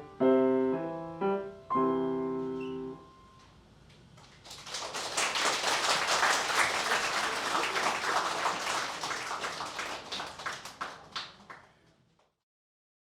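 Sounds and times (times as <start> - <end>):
small audience applauding: 4.2 - 12.4.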